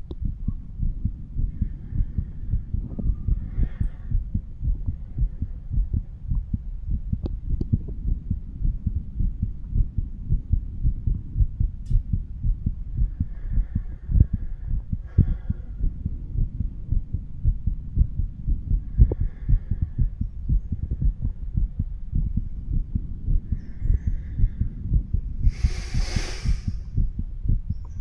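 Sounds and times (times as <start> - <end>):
heartbeat thuds: 0.0 - 28.0
burst of hiss: 25.5 - 27.0.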